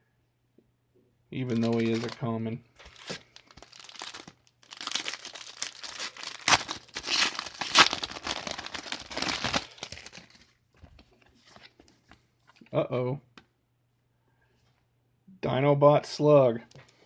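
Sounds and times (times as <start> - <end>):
foil wrapper tearing and crinkling: 1.5 - 10.5.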